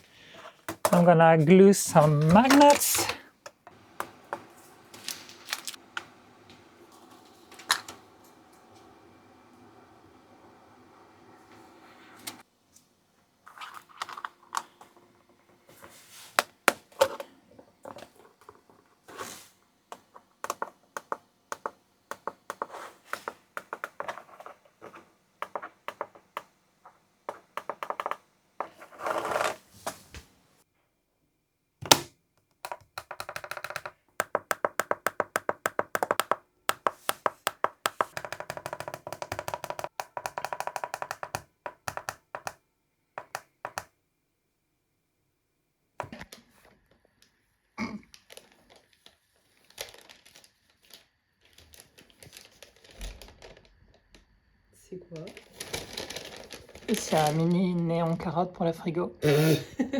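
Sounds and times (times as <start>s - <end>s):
small plastic parts clicking: 31.8s - 42.6s
rapid button clicks: 32.7s - 42.6s.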